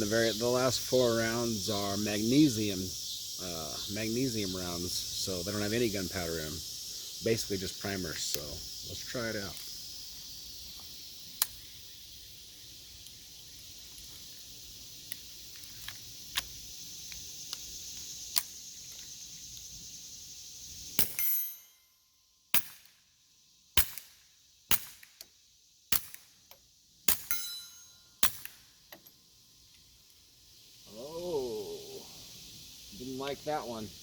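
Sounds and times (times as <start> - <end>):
pistol shots with ringing tail: 21.0 - 21.7, 22.6 - 22.9, 23.8 - 25.0, 27.1 - 28.6.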